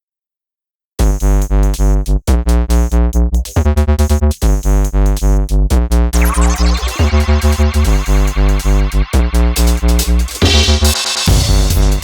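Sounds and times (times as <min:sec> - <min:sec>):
pounding synthesizer bass beat: 0:01.0 - 0:12.0
electronic dance music: 0:06.2 - 0:12.0.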